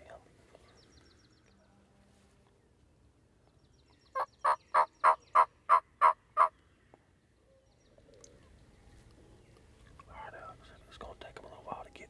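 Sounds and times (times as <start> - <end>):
turkey yelping: 4.2 - 6.5.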